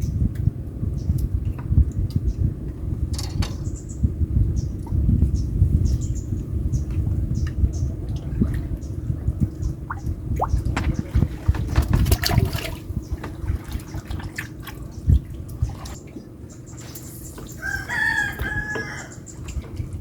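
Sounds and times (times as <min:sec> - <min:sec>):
water splashes: 0:09.6 - 0:17.6.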